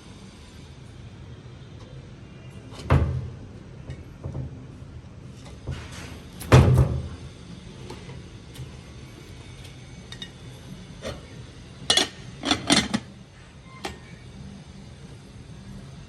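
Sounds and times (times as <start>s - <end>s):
steady low hum: 0.0s - 16.0s
dishes and utensils clinking: 10.1s - 10.4s, 11.9s - 14.1s.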